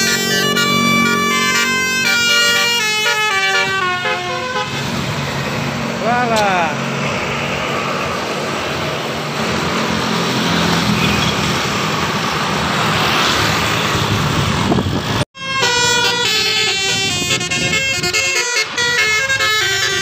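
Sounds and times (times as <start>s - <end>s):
bus horn playing multi-tone tune: 0.0s - 5.0s, 15.4s - 20.0s
heavy road traffic: 0.0s - 20.0s.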